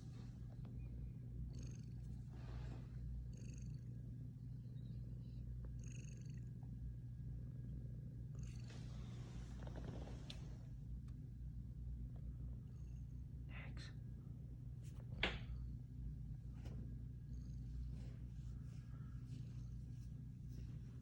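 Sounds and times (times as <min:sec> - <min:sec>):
cat snoring: 0:01.5 - 0:03.9, 0:05.8 - 0:06.5, 0:08.4 - 0:10.5.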